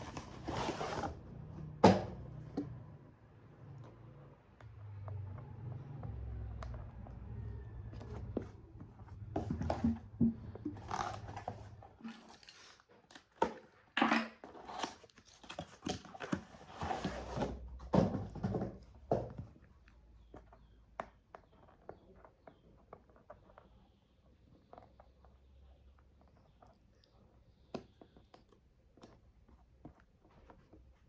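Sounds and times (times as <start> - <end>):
handling rustling and scraping: 0.0 - 1.7, 7.9 - 18.8.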